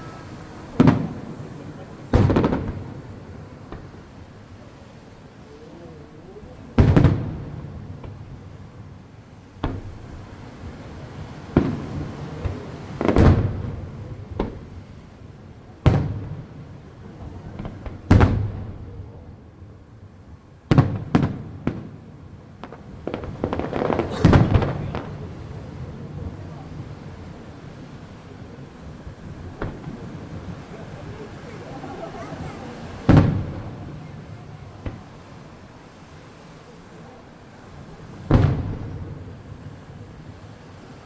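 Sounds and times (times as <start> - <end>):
firework shells bursting: 0.0 - 4.0, 22.6 - 27.8, 28.9 - 35.3.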